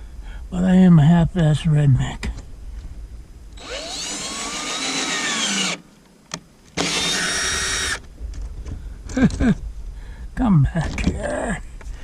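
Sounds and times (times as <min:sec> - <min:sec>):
power drill whining: 0:03.6 - 0:05.8, 0:06.8 - 0:08.0.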